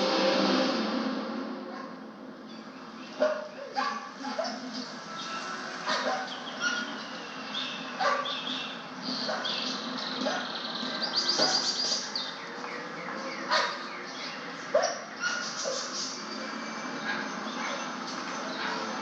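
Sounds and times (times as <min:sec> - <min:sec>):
dogs barking and yipping: 0:03.1 - 0:04.9, 0:05.8 - 0:07.2, 0:07.9 - 0:12.0, 0:13.4 - 0:13.9, 0:14.7 - 0:16.2, 0:16.9 - 0:19.0.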